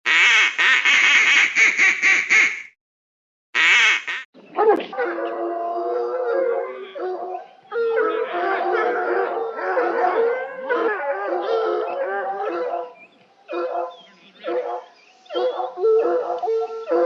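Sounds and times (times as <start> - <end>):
dogs howling: 4.8 - 17.0.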